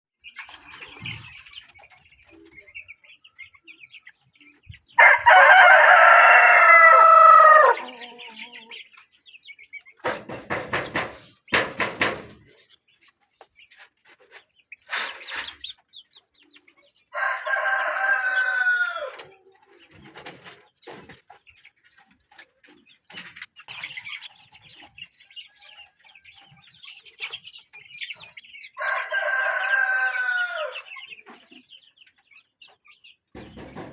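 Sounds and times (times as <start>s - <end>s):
chickens clucking: 0.2s - 33.9s
rooster crowing: 5.0s - 7.9s, 17.2s - 19.1s, 28.8s - 30.8s
sharp knocks: 10.0s - 12.4s.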